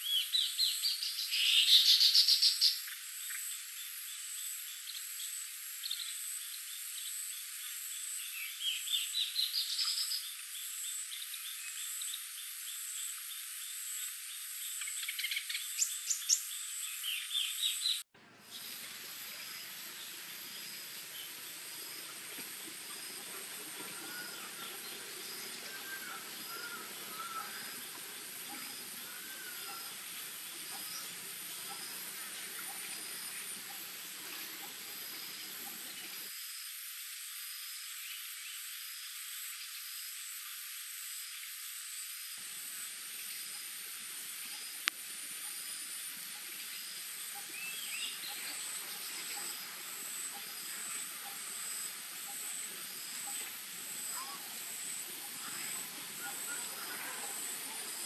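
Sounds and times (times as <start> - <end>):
faint chirps: 0.0 - 36.3, 42.6 - 58.0
insect chirp: 0.0 - 58.0
insects buzzing: 0.0 - 58.0.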